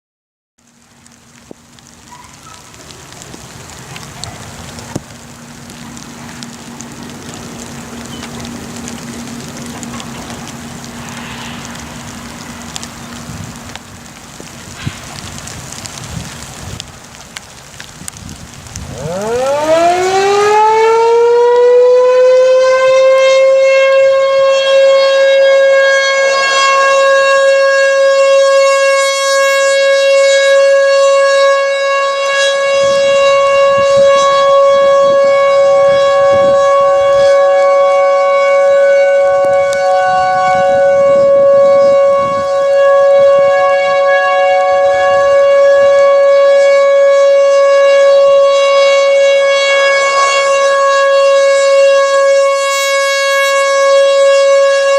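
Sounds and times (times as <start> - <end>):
outdoor warning siren: 0.6 - 54.9
fainter higher siren tone: 6.4 - 13.8, 18.9 - 54.9.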